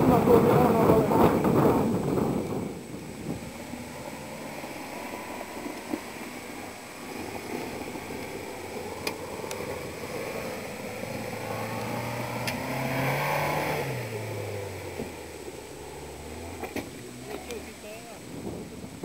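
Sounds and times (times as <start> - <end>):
small engine revving: 0.0 - 19.0.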